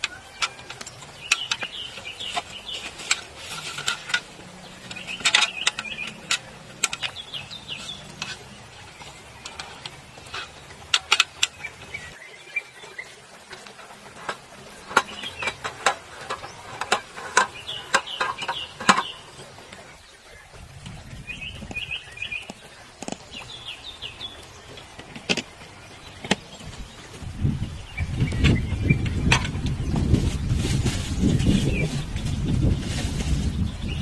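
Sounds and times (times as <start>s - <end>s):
sharp clicks and knocks: 0.0s - 12.2s, 13.5s - 19.8s, 24.2s - 26.8s.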